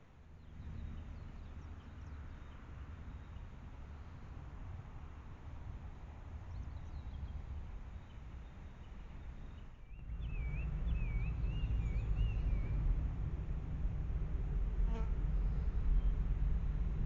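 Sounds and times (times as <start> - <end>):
small bird whistling song: 9.8 - 12.8
low rumble: 10.0 - 17.0.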